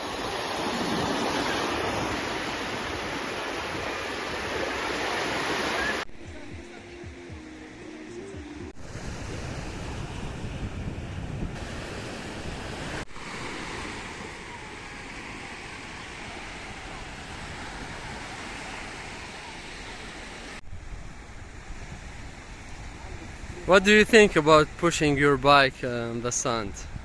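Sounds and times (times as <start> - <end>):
sea waves washing on beach: 0.0 - 6.1, 8.7 - 27.0
wind buffeting microphone: 8.8 - 13.0, 26.7 - 27.0.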